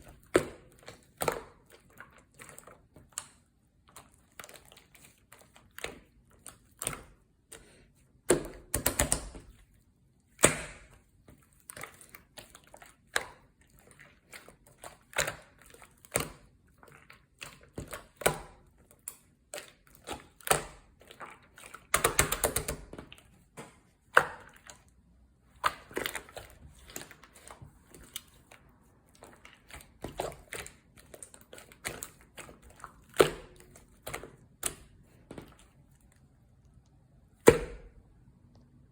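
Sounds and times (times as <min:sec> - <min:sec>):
slime squishing wet clicks and pops: 0:10.4 - 0:11.0, 0:21.8 - 0:24.8.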